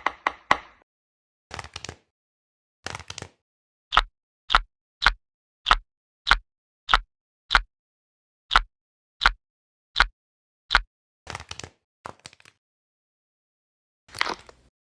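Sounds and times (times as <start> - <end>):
squishy toy squeezed: 14.1 - 14.7.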